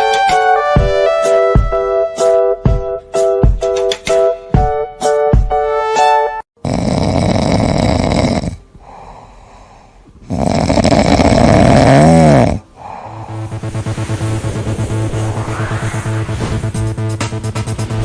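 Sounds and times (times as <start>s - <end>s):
loud snoring: 6.6s - 8.6s, 10.2s - 13.4s.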